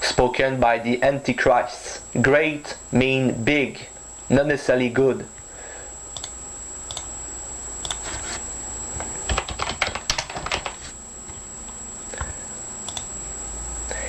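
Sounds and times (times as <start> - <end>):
typing on keyboard: 9.3 - 10.8.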